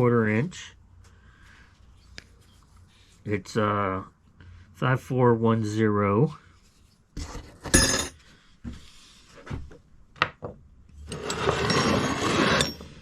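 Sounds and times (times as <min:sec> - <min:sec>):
scraping among tools: 0:11.0 - 0:13.0.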